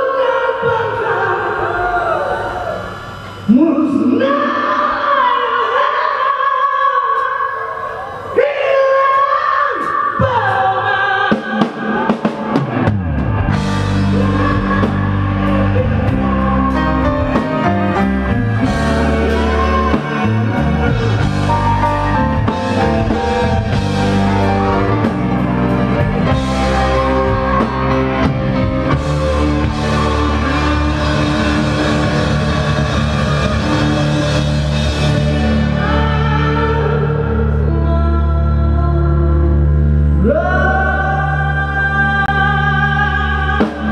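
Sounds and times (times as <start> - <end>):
person singing: 0.0 - 43.9
live rock band playing: 11.3 - 37.7
drums and bass: 11.3 - 39.6, 42.1 - 43.9.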